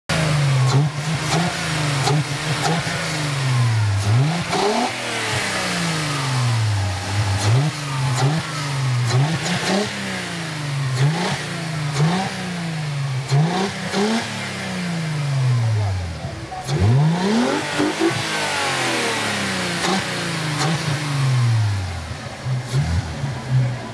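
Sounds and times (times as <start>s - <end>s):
car engine revving: 0.1s - 23.9s.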